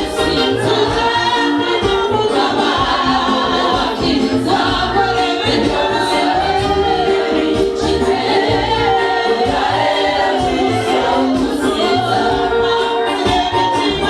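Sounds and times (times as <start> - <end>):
choir singing gospel: 0.0 - 14.0.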